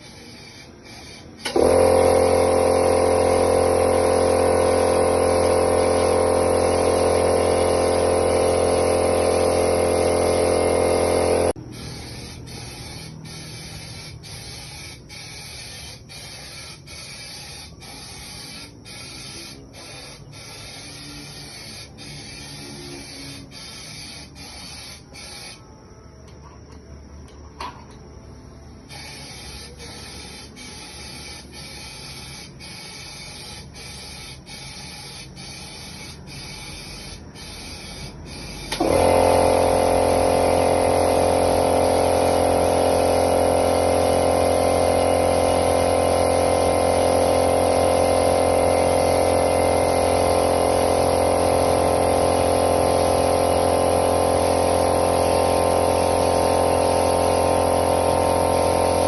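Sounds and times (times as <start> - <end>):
spray hissing in bursts: 0.0 - 25.6, 28.8 - 59.0.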